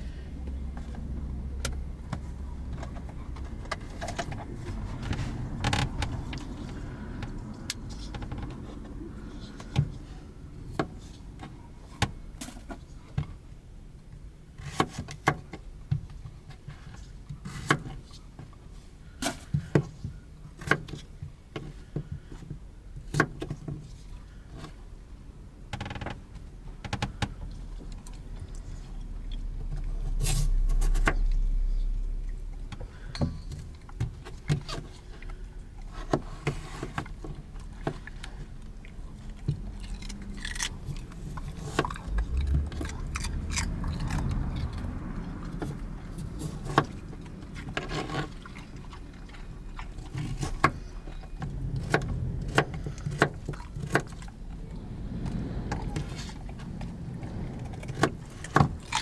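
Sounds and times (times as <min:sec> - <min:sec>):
low rumble: 0:28.2 - 0:34.0, 0:37.5 - 0:59.0.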